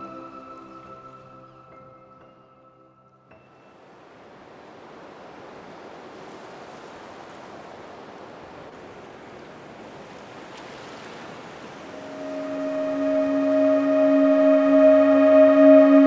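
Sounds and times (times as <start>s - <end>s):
water rushing: 3.9s - 16.0s.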